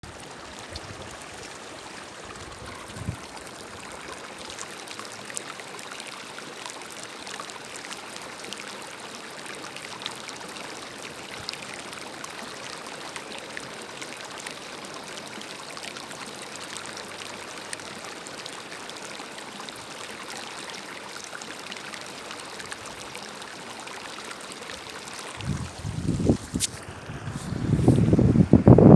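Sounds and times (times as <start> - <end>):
spring water trickling: 0.0 - 28.9
wind buffeting microphone: 2.4 - 3.4, 25.4 - 28.9.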